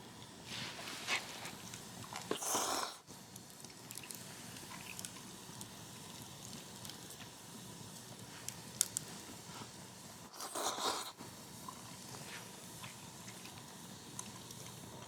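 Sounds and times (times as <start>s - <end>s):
rustling noise: 0.5s - 1.6s
wood fire crackling: 3.3s - 10.3s, 11.2s - 15.0s.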